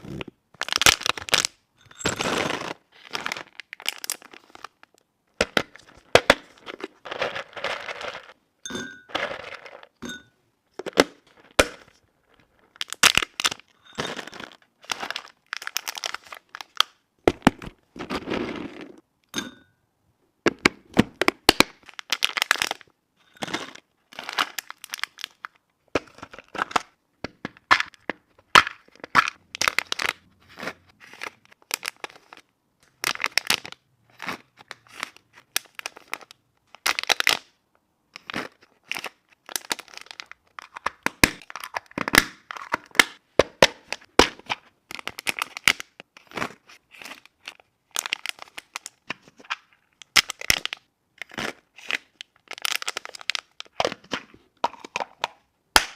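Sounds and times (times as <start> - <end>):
packaging crinkling and tearing: 0.0 - 5.0, 12.7 - 19.0, 21.6 - 22.9, 24.1 - 26.9, 28.6 - 37.5, 38.2 - 43.2, 43.8 - 54.2.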